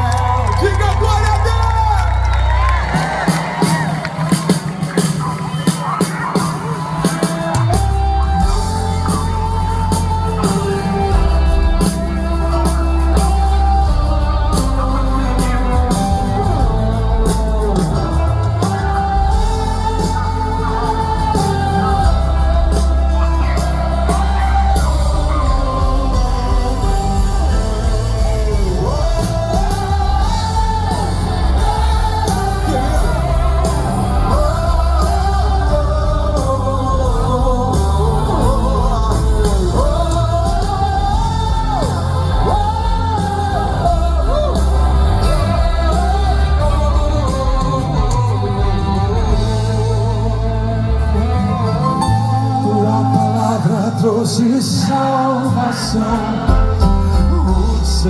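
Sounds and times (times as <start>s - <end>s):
heavy bass: 0.0s - 4.0s, 7.6s - 58.0s
live gospel band music: 0.0s - 58.0s
person singing: 2.4s - 58.0s.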